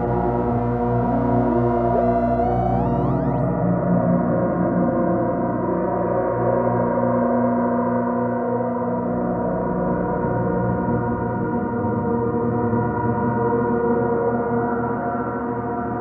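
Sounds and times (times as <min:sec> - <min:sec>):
layered synthesizer drone: 0:00.0 - 0:03.6.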